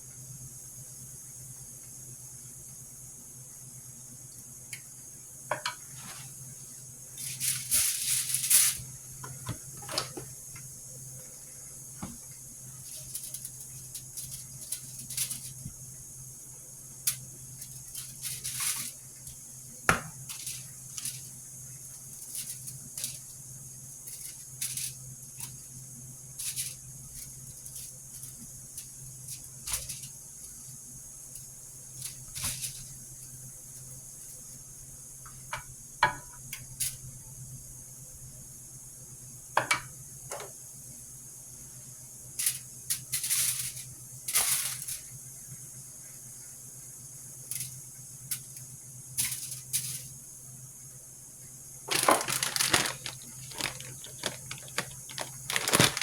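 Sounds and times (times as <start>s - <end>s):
low hum and hiss: 0.0s - 56.0s
rustling scrape: 6.0s - 6.4s, 51.9s - 56.0s.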